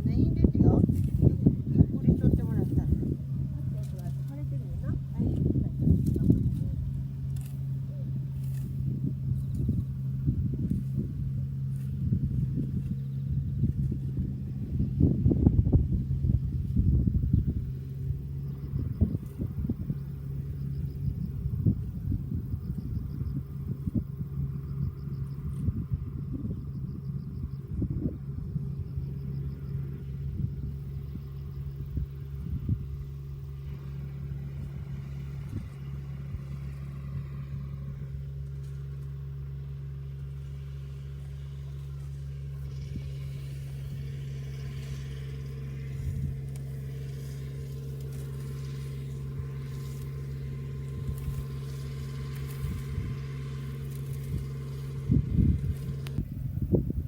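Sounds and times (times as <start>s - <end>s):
farm machine engine humming: 0.0s - 57.0s.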